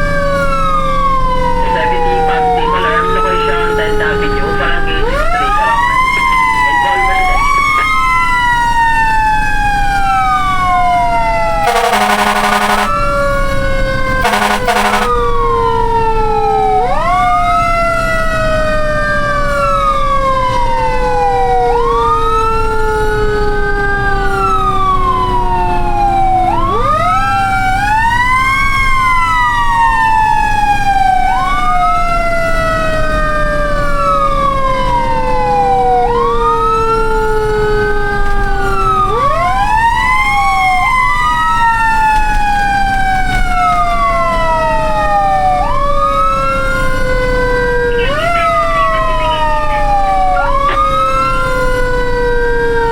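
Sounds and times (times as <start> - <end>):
fire truck sirens wailing: 0.0 - 52.9
short horn blasts: 11.6 - 13.0, 14.2 - 15.3.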